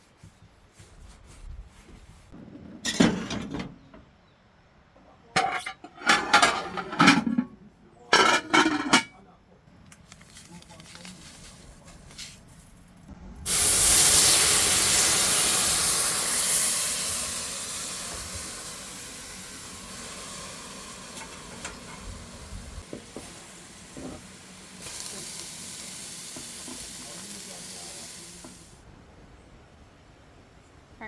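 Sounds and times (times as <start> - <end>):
sizzling in a hot pot: 13.4 - 28.8.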